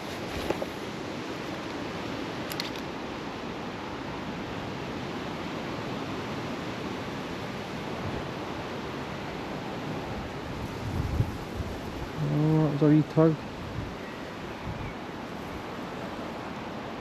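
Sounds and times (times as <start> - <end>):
river water rushing: 0.0 - 17.0.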